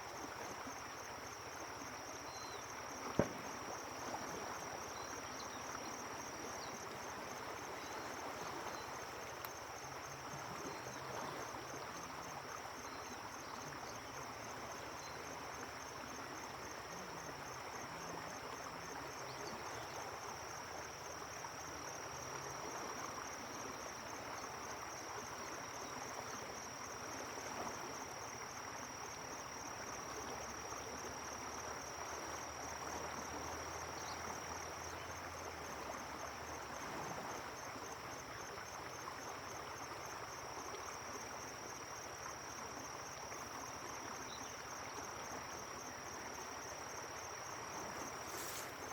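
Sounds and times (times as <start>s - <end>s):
flowing river water: 0.0s - 48.9s
high-pitched insect trill: 46.6s - 48.9s.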